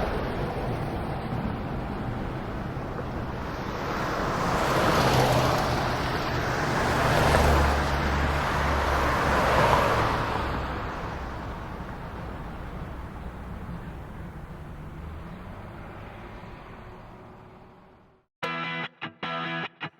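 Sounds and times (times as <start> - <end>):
vehicle passing by: 3.8 - 11.8.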